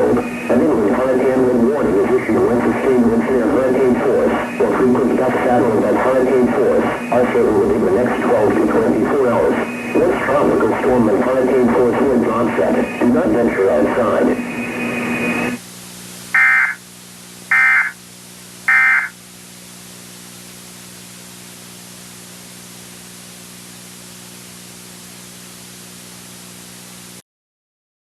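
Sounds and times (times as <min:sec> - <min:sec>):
low hum: 0:00.0 - 0:15.6
static hiss: 0:00.0 - 0:27.2
alert data tone bursts: 0:16.4 - 0:16.8, 0:17.5 - 0:18.0, 0:18.7 - 0:19.1.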